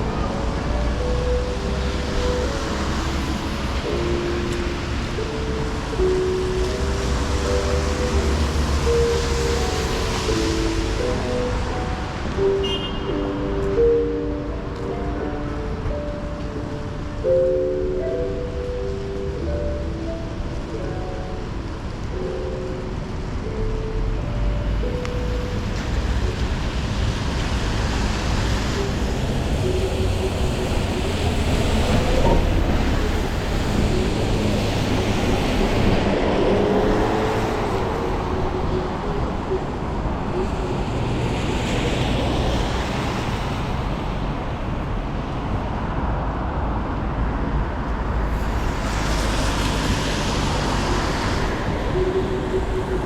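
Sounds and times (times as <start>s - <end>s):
tyres hissing on wet road: 0.0s - 14.4s, 24.4s - 45.8s, 48.0s - 53.0s
vehicles passing: 0.0s - 53.0s.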